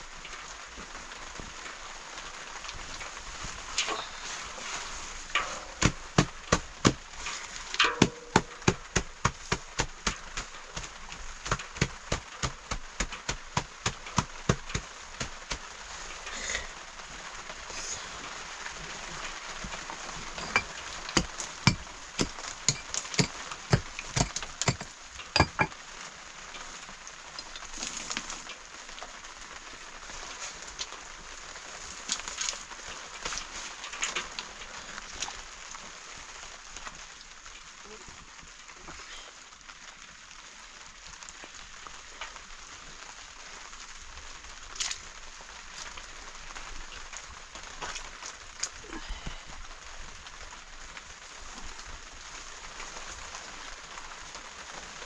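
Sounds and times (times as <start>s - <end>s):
rain hissing: 0.0s - 55.0s
sharp knocks: 7.8s - 10.2s, 20.4s - 25.8s.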